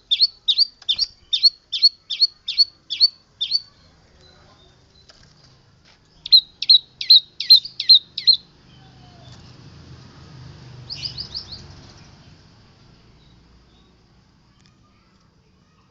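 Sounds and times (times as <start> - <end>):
bird singing sharp notes: 0.1 - 5.1, 6.2 - 9.5, 10.9 - 12.1.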